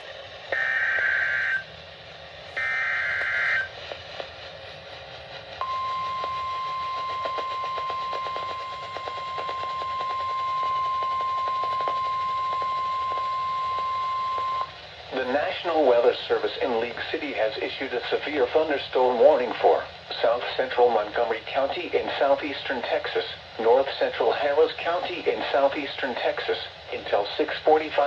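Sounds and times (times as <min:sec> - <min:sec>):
crackling radio static: 0:00.0 - 0:01.6, 0:02.5 - 0:04.6, 0:05.6 - 0:28.0
steady warning alarm tone: 0:00.5 - 0:01.7, 0:02.6 - 0:03.8, 0:05.6 - 0:14.8
data bursts: 0:00.6 - 0:01.6, 0:02.6 - 0:03.7, 0:05.6 - 0:14.7.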